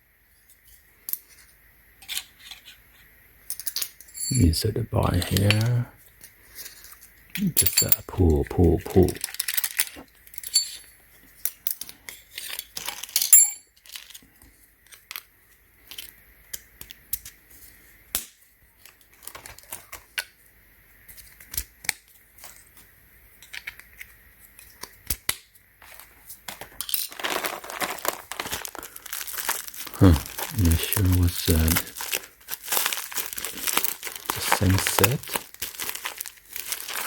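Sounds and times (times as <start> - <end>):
small metal parts clicking: 3.5 - 4.4, 9.2 - 14.2
plastic packaging crinkling: 7.9 - 10.1, 12.4 - 13.2, 13.8 - 15.0, 18.8 - 20.2, 25.8 - 37.0.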